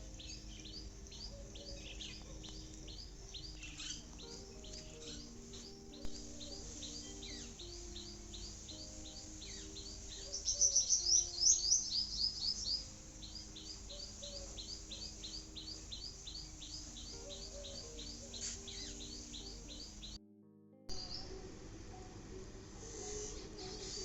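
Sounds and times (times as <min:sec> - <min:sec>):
rapid bird twittering: 0:00.0 - 0:20.2, 0:22.8 - 0:24.0
small birds chirping: 0:00.0 - 0:20.2, 0:20.9 - 0:24.0.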